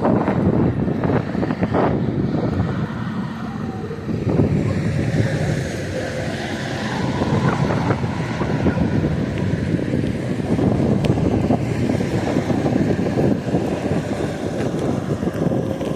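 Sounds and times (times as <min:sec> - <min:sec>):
vehicle rumble: 0:00.0 - 0:15.9
wind buffeting microphone: 0:00.0 - 0:15.9.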